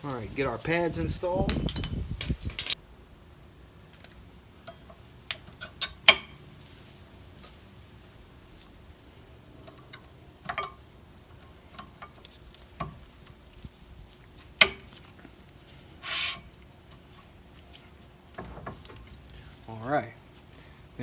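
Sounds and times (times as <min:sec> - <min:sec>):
metal clicks and clinks: 0:04.6 - 0:06.3, 0:09.6 - 0:10.8
metal scrape: 0:15.7 - 0:16.6.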